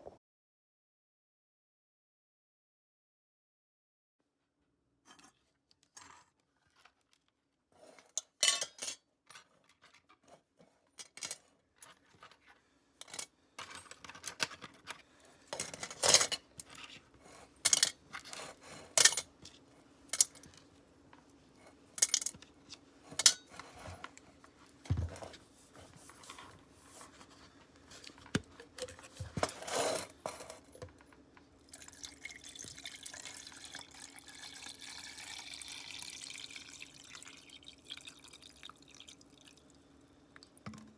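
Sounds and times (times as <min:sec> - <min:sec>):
faint steady hum: 0:11.0 - 0:40.9
tap water running: 0:31.6 - 0:40.9.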